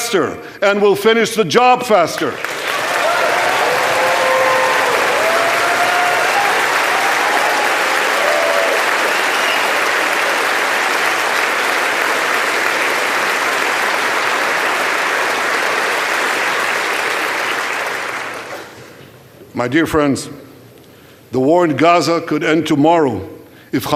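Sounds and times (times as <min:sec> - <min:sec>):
large audience applauding: 0:02.2 - 0:18.9.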